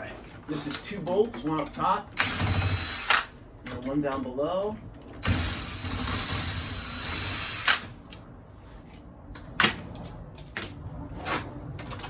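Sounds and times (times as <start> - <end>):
cordless drill running: 2.2 - 3.2.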